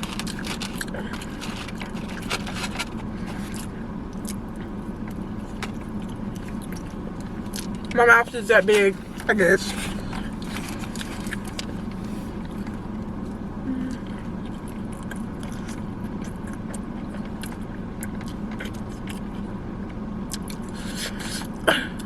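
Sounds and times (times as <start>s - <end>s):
person chewing: 0.0s - 8.0s, 9.0s - 21.6s
low hum inside car: 0.0s - 22.0s.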